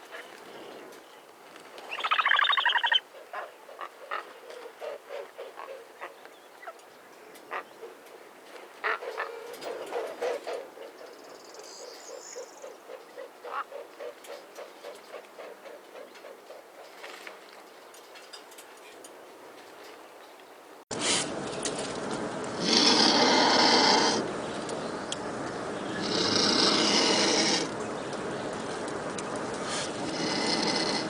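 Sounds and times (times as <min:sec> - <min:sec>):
vulture calls: 0:01.8 - 0:06.8, 0:07.4 - 0:17.6, 0:25.8 - 0:27.8.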